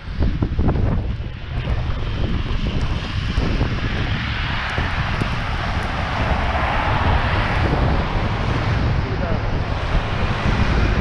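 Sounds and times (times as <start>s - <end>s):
wind buffeting microphone: 0.0s - 11.0s
vehicle tyres hissing on wet road: 4.5s - 8.8s.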